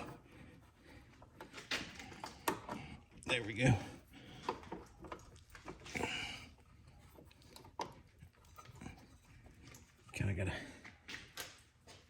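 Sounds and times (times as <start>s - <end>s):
tools clicking and knocking: 1.2s - 3.6s, 4.3s - 10.2s
heavy breath: 5.8s - 7.2s.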